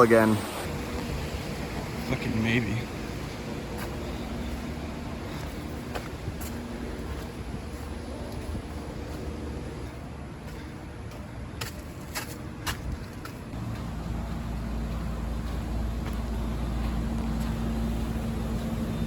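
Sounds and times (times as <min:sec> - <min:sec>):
motor engine running: 0:00.7 - 0:10.0, 0:13.6 - 0:19.0.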